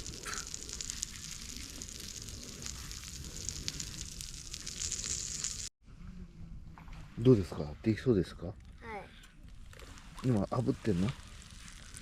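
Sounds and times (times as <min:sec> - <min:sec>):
campfire crackling and popping: 0:00.0 - 0:05.7, 0:08.6 - 0:12.0
fire hiss: 0:00.0 - 0:05.7, 0:09.7 - 0:12.0.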